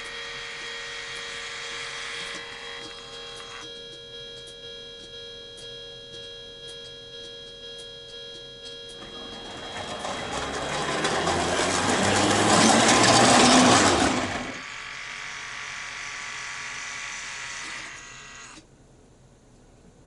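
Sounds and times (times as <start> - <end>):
steady ringing tones: 0.0 - 17.4
model train rumbling on track: 9.0 - 15.2.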